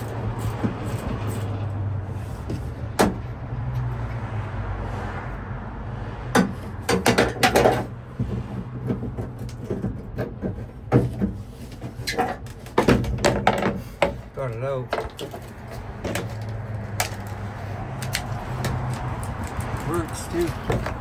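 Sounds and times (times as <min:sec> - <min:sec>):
clicks and knocks of metal tools: 0:09.4 - 0:21.0.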